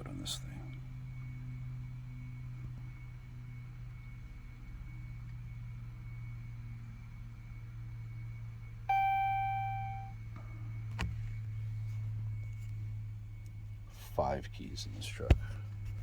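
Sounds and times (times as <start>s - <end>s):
steady low hum: 0.0s - 16.0s
electronic chime: 8.9s - 10.1s.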